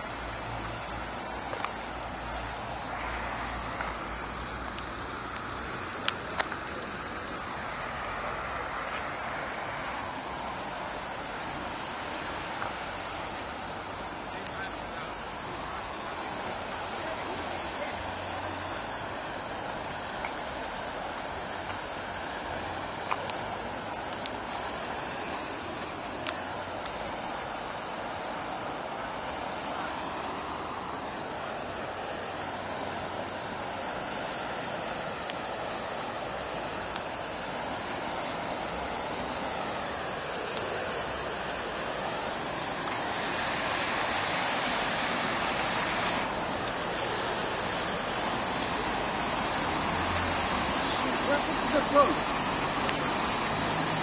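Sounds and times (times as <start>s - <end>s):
rushing floodwater: 0.0s - 54.0s.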